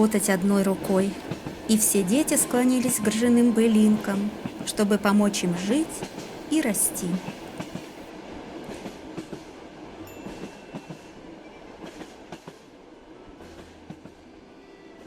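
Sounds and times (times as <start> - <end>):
wheels clacking over rail joints: 0.0 - 6.5
train rumble: 0.0 - 15.0.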